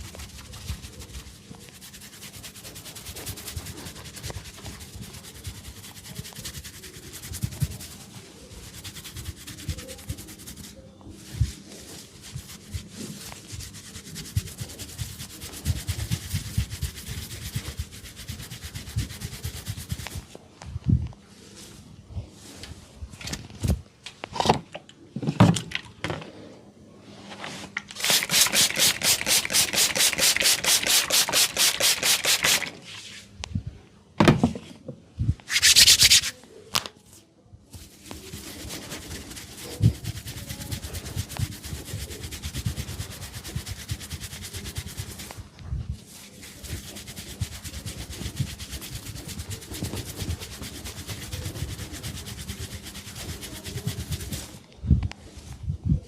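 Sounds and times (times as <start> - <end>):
hands rubbing oiled hair: 0.0 - 20.3, 28.0 - 32.8, 35.5 - 36.4, 37.8 - 54.6.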